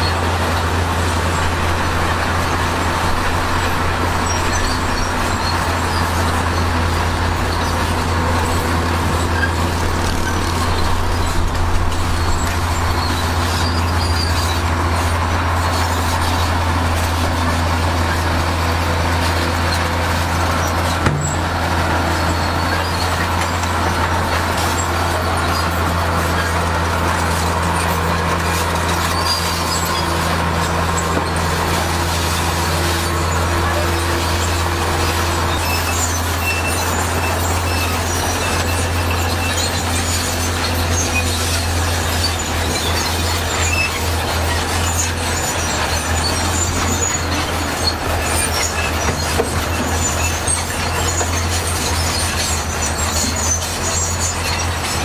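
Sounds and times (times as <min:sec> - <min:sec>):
diesel machinery engine drone: 0:00.0 - 0:55.0
sharp knock: 0:21.0 - 0:21.5.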